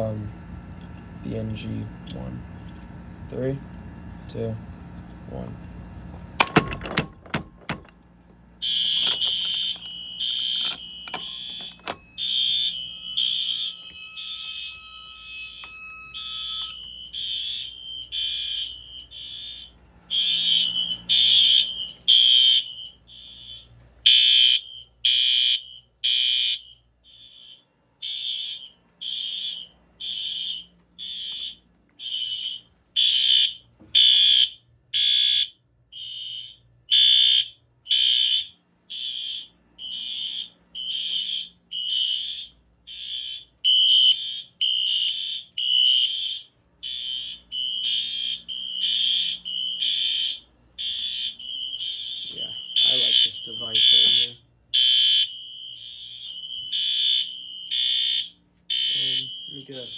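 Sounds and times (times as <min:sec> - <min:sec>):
fire alarm horn pulsing: 0:00.0 - 0:59.9
pull station clicks: 0:05.8 - 0:08.1, 0:08.8 - 0:12.1.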